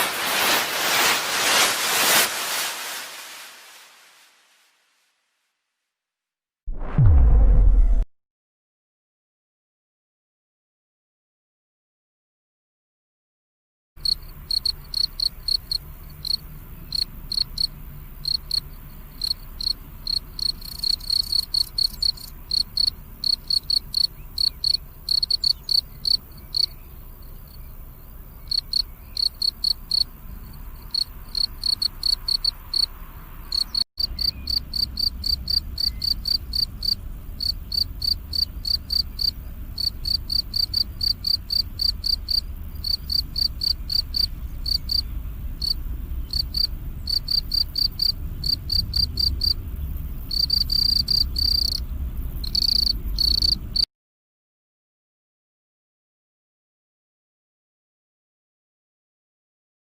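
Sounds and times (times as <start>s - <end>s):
cricket chirping: 14.0s - 53.8s.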